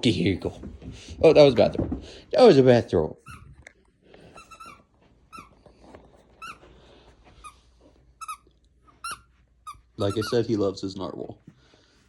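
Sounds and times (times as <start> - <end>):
squeaky toy squeaks: 3.2 - 3.6, 4.4 - 5.6, 6.4 - 6.6, 8.2 - 10.6.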